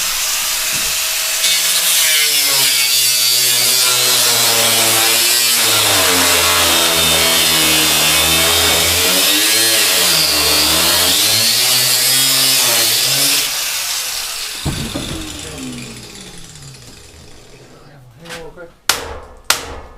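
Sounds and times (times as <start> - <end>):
power tool running under load: 0.0 - 17.8
knock: 14.6 - 16.1.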